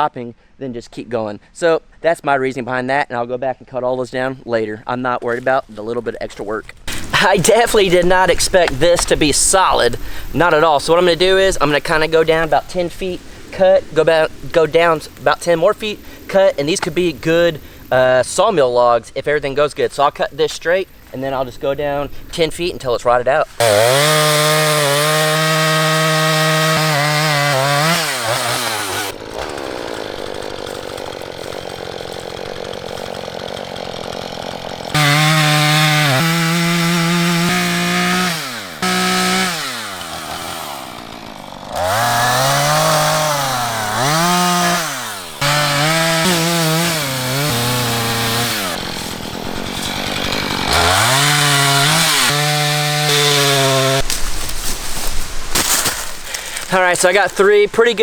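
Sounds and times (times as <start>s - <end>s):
chainsaw cutting wood: 6.7s - 13.6s, 23.5s - 57.5s.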